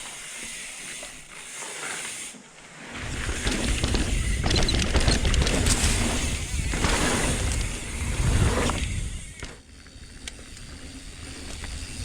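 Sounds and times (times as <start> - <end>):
tyres rolling over dirt: 2.8 - 12.0
bike chatter and rattles: 3.0 - 12.0
bike hub ratcheting: 3.3 - 8.1.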